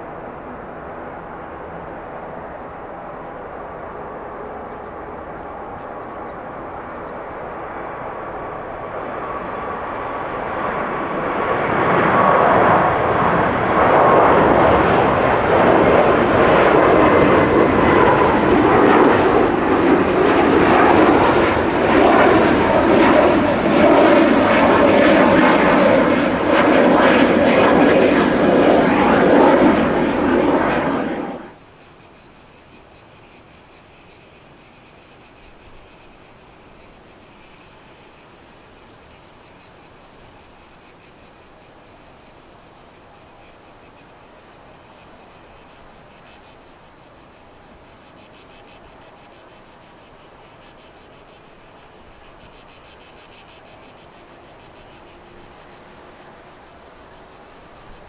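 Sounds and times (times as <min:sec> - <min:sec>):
airliner engines: 0:00.0 - 0:31.9, 0:34.0 - 0:58.0
high-pitched insect chirping: 0:31.6 - 0:58.0.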